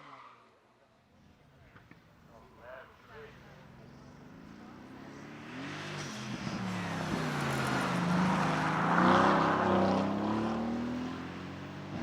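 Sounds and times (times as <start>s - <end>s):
car engine accelerating hard: 3.8s - 12.0s.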